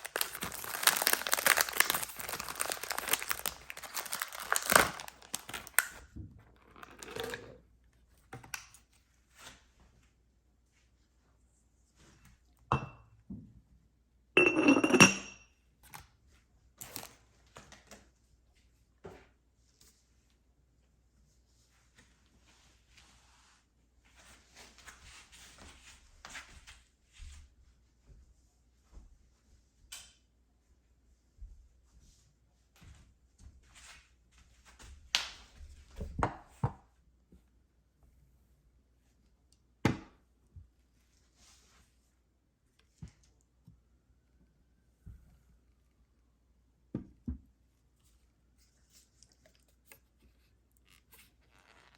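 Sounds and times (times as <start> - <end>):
candies clattering against glass: 0.0 - 5.8.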